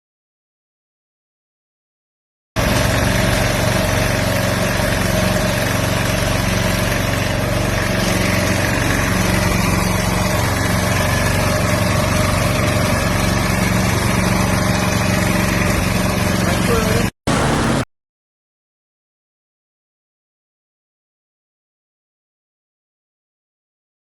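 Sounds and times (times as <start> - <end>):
generator engine running: 2.6 - 17.9.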